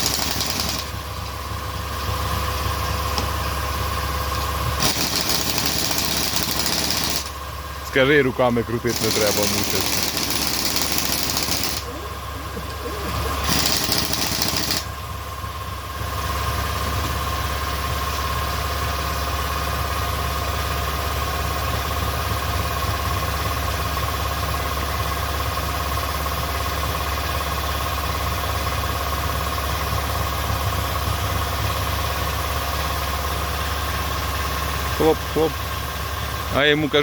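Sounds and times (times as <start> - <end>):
motor humming and whining: 0.0 - 18.5.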